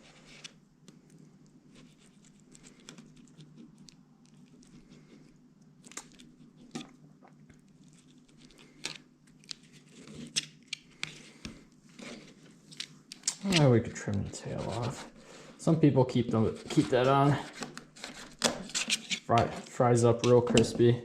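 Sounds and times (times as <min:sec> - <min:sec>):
faint low hum: 0:00.0 - 0:21.0
knife scraping on cutting board: 0:14.4 - 0:15.2.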